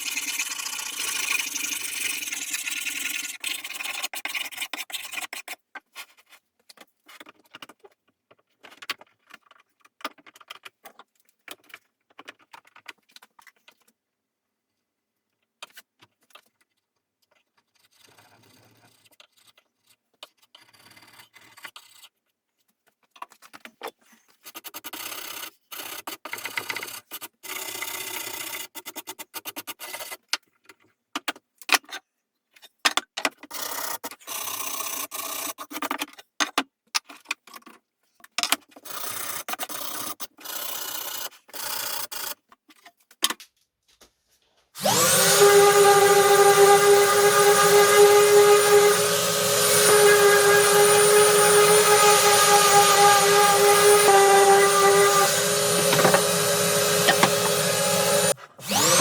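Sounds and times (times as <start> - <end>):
small clicks and handling noises: 5.7 - 14.0, 42.5 - 44.1
sanding rubbing strokes: 44.8 - 59.0.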